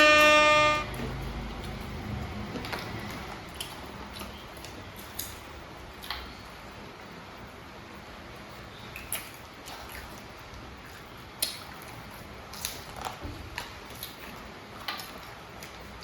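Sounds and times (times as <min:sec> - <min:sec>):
crunching fried pastry: 0:08.9 - 0:16.0.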